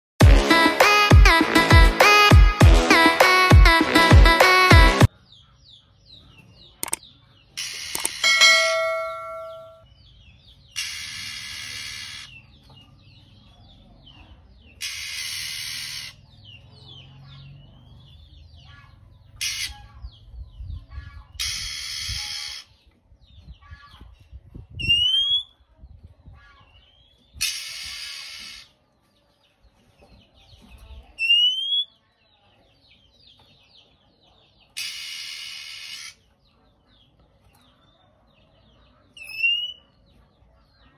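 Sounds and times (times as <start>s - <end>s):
bird harsh hissing rasps: 7.6s - 8.2s, 10.8s - 12.3s, 14.8s - 16.2s, 21.4s - 22.7s, 27.4s - 28.7s, 34.8s - 36.2s
bell-like chime: 8.2s - 9.8s.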